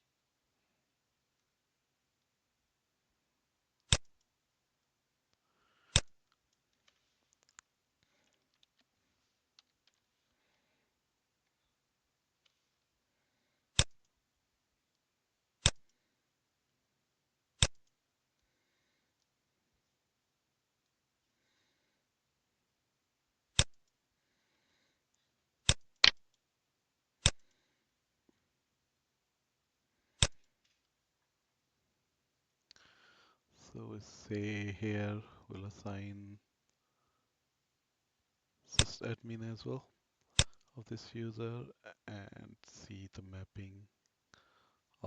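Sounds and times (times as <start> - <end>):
computer mouse clicks: 3.8 - 4.3, 15.6 - 16.0, 30.2 - 30.8, 38.8 - 39.0.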